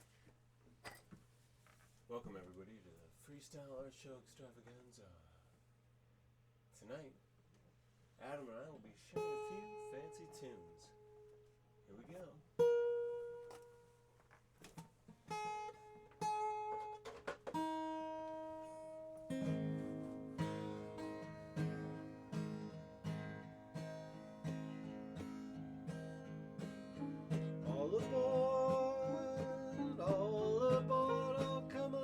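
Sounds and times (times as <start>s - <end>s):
acoustic guitar playing: 9.2s - 11.6s, 12.6s - 14.2s, 14.8s - 32.0s.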